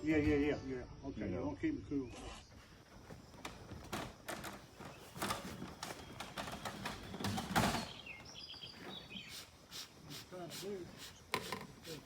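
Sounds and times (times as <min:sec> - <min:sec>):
equipment being handled: 0:02.6 - 0:09.2
bird chirping: 0:04.5 - 0:12.0.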